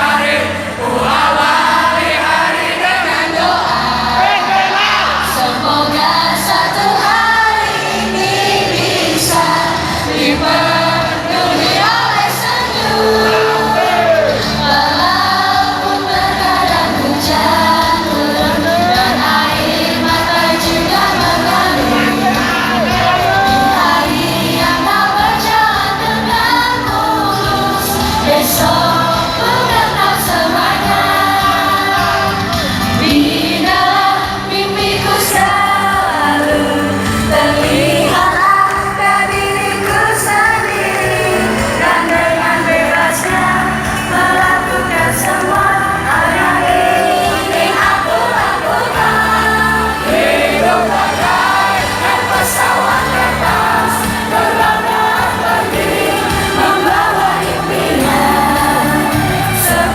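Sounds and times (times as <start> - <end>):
crowd shouting: 0.0 - 17.7, 18.4 - 25.4, 40.4 - 59.9
women singing in unison: 0.0 - 59.9.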